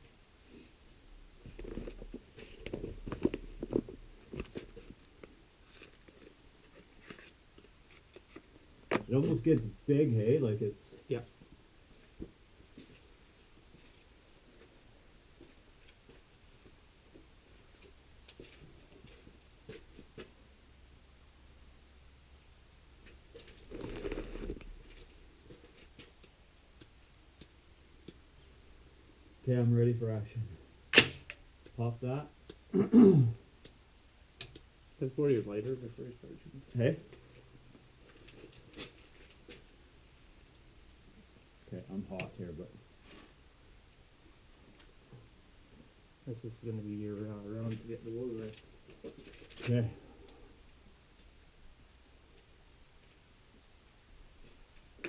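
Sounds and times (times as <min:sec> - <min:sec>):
gear rustling: 0:23.4 - 0:26.1.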